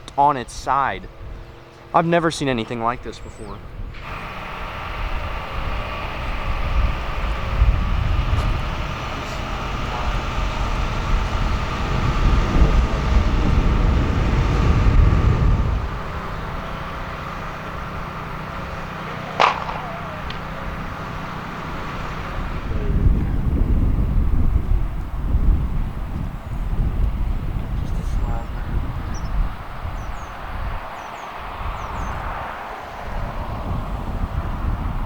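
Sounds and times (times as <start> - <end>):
steady mechanical hum: 0.0 - 35.0
wind buffeting microphone: 0.0 - 35.0
brief sharp sound with falling tail: 19.2 - 22.2.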